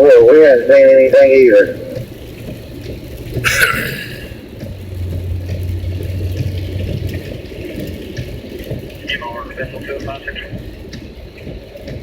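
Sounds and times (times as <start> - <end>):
engine droning: 0.0 - 12.0.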